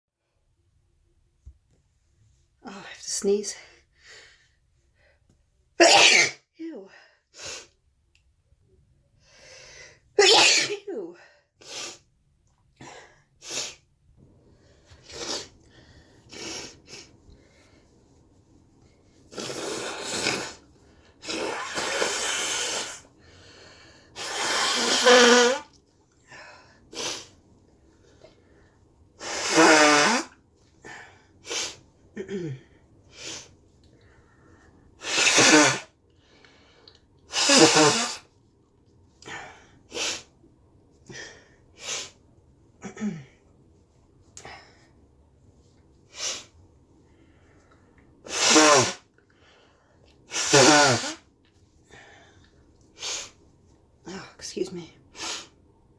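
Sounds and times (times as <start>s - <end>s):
person sneezing: 5.8s - 6.5s, 10.2s - 10.9s, 24.2s - 25.7s, 29.2s - 30.4s, 35.0s - 35.9s, 37.3s - 38.3s, 48.3s - 49.1s, 50.3s - 51.2s
sharp sniffs and breaths: 14.5s - 18.0s, 26.6s - 27.4s, 41.1s - 42.2s, 46.0s - 51.2s, 51.9s - 53.4s, 55.1s - 55.6s.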